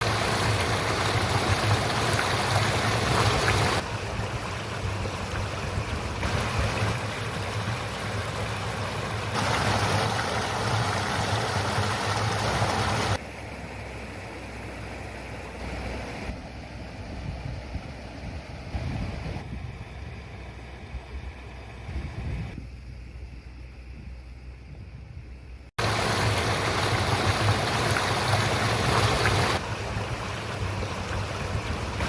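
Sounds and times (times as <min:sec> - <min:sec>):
stream babbling over rocks: 0:00.0 - 0:13.2, 0:25.8 - 0:32.0.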